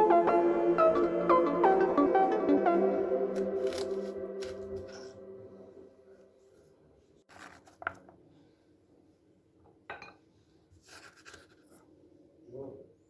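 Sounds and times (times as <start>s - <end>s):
soft kitchen scrapes and rustles: 10.7s - 12.0s.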